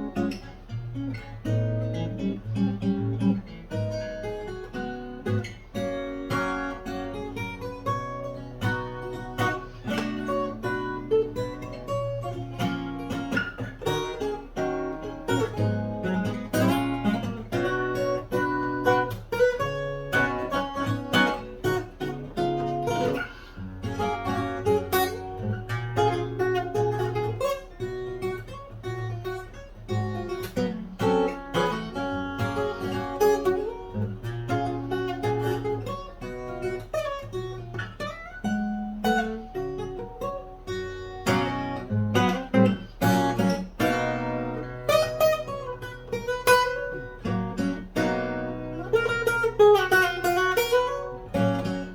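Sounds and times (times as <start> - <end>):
fingerstyle acoustic guitar: 0.0 - 51.9.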